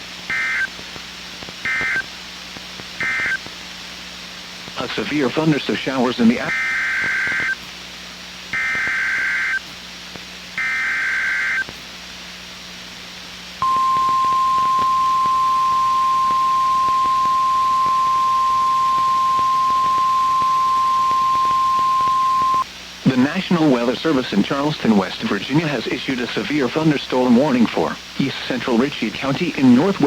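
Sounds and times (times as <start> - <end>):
steady warning alarm tone: 13.6 - 22.6
warbling data bursts: 13.6 - 22.6.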